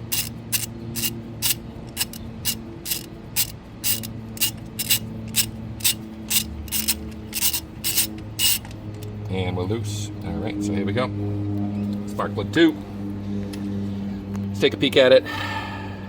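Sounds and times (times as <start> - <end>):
ratchet wrench clicking: 0.0 - 8.8.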